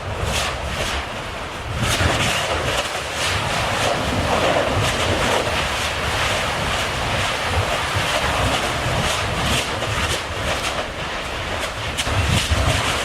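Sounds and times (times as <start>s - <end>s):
lava rushing noise: 0.0s - 13.0s
wind buffeting microphone: 0.0s - 13.0s.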